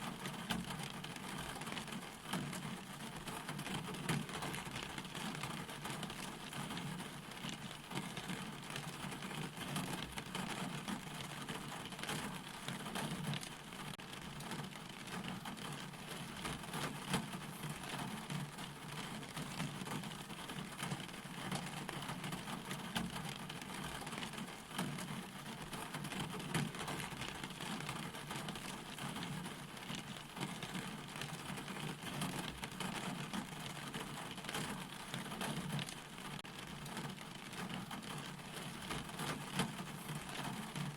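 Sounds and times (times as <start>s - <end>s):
rain falling: 0.0s - 40.9s
raindrops striking close by: 0.0s - 40.9s.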